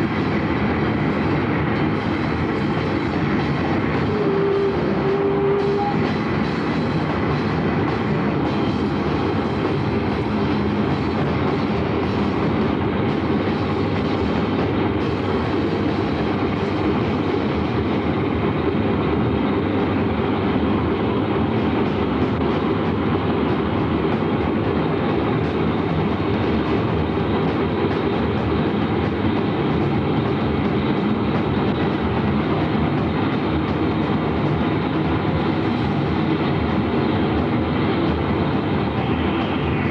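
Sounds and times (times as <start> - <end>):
moving vehicle rumbling: 0.0 - 39.9.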